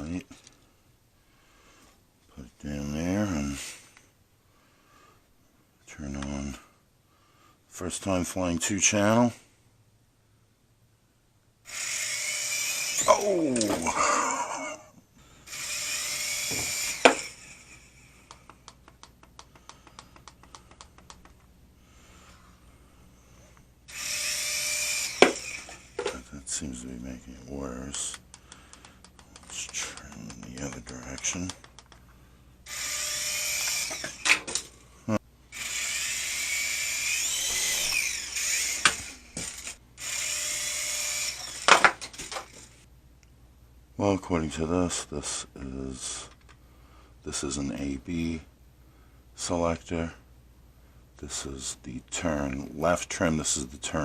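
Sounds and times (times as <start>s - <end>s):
toy helicopter motor whirring: 11.7s - 14.6s, 15.4s - 18.8s, 23.9s - 26.2s, 27.6s - 31.8s, 32.7s - 34.7s, 35.5s - 42.8s
light fast clicks: 18.3s - 21.5s.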